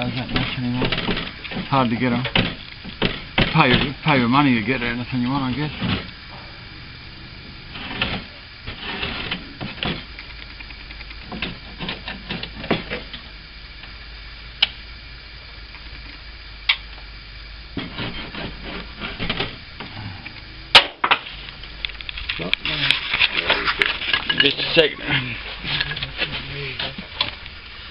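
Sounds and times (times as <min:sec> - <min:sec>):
sharp clicks: 0:14.6 - 0:14.8.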